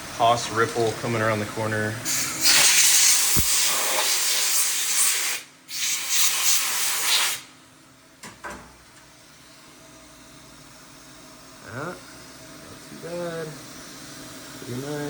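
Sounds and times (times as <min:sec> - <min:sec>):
compressed air hissing: 0:02.0 - 0:07.5.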